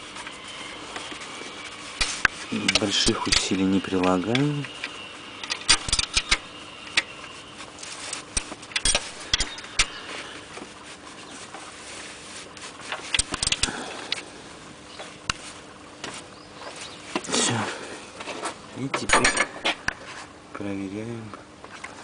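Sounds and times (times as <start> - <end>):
spanner clicking on bolts: 2.0 - 7.1.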